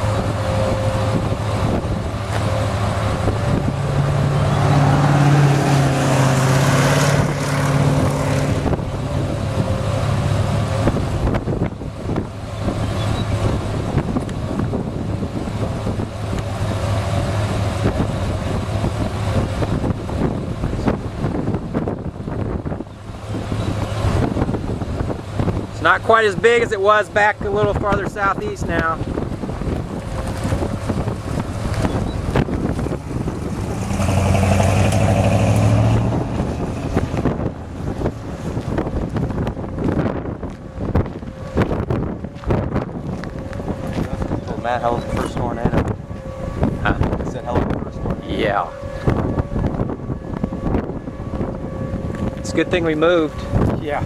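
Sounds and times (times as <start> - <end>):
vehicle engine hum: 0.0 - 54.0
wind buffeting microphone: 0.0 - 54.0
steady low hum: 35.6 - 54.0.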